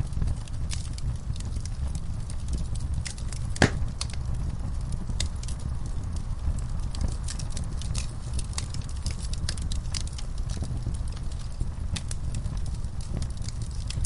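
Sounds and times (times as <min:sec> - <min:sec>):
low rumble of burning: 0:00.0 - 0:14.0
wood fire crackling and popping: 0:00.0 - 0:14.0.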